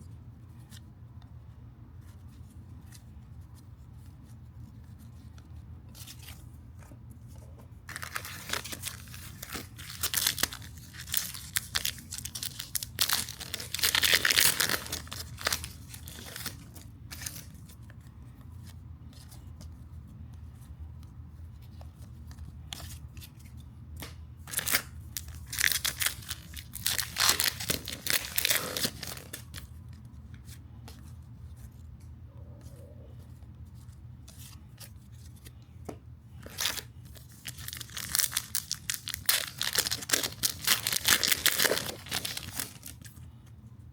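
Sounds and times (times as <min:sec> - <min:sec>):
cards being handled: 0:00.4 - 0:43.6
wrappers tearing and crinkling: 0:07.9 - 0:17.5, 0:24.5 - 0:29.6, 0:36.4 - 0:43.1.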